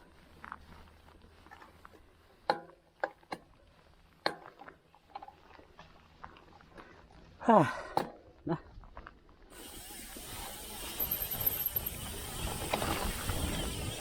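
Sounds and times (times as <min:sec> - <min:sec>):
bike clicks and rattles: 0:07.9 - 0:14.0.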